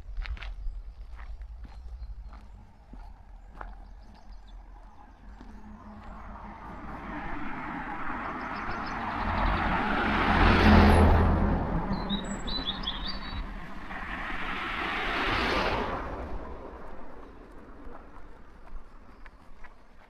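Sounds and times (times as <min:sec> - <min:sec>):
small birds chirping: 0:00.1 - 0:07.1, 0:08.2 - 0:09.8, 0:11.8 - 0:14.0
vehicle approaching: 0:00.1 - 0:20.0
car passing by: 0:04.9 - 0:19.8.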